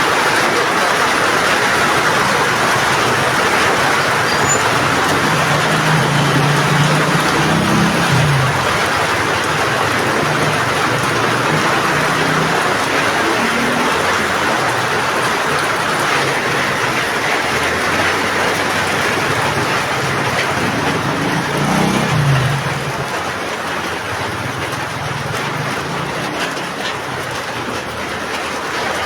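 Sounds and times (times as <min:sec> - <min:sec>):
heavy rain falling: 0:00.0 - 0:29.0.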